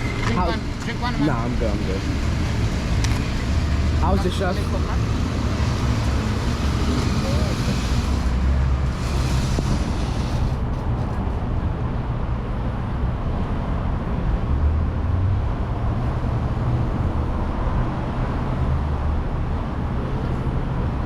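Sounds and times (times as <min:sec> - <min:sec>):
vehicle engines rumbling: 0:00.0 - 0:21.0.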